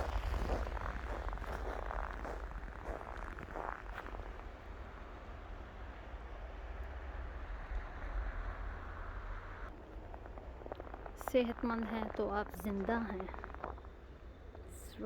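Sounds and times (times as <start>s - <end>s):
wind buffeting microphone: 0.0s - 4.9s
outdoor rumble and hiss: 0.0s - 15.0s.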